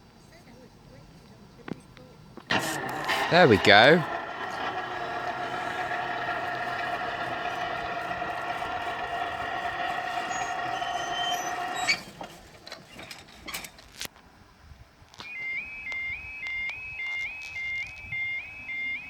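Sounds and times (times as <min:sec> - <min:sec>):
clicks: 0:02.4 - 0:14.1
level crossing alarm tone: 0:15.3 - 0:19.0.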